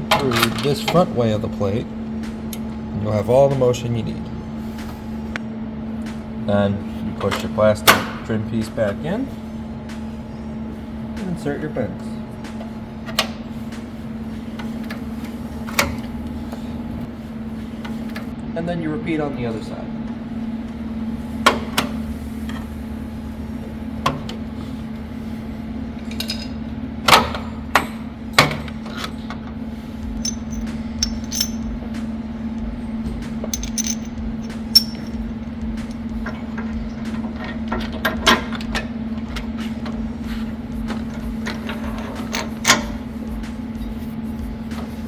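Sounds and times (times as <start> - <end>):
steady low hum: 0.0 - 45.0
metal clanks of tools and plates: 26.0 - 29.2, 41.0 - 43.0.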